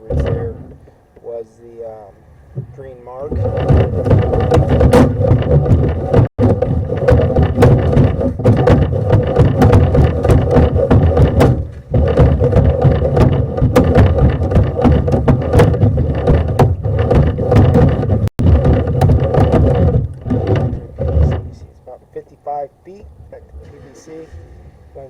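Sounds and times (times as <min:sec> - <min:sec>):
sharp clicks and rattles: 0:02.6 - 0:22.2.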